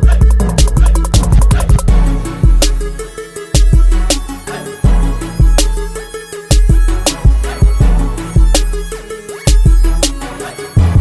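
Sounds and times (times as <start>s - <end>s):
hip-hop beat with heavy bass: 0.0s - 11.0s.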